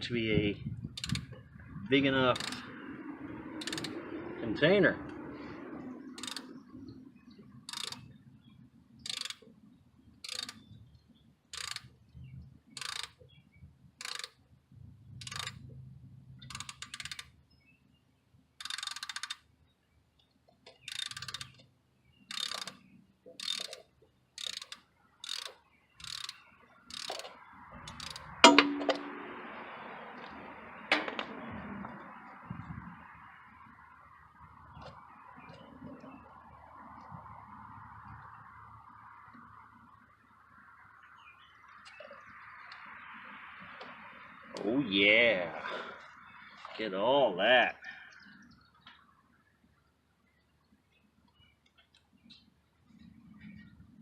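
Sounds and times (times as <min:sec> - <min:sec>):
hand ratchet clicking: 0:01.0 - 0:01.3, 0:02.4 - 0:02.6, 0:03.6 - 0:04.0, 0:06.2 - 0:06.5, 0:07.7 - 0:08.0, 0:09.1 - 0:09.4, 0:10.2 - 0:10.6, 0:11.6 - 0:11.9, 0:12.8 - 0:13.2, 0:14.0 - 0:14.4, 0:15.2 - 0:15.6, 0:18.6 - 0:19.4, 0:20.9 - 0:21.6, 0:22.3 - 0:22.8, 0:23.4 - 0:23.8, 0:24.4 - 0:27.3
metal clunk with ring: 0:28.4 - 0:29.3, 0:30.9 - 0:31.3.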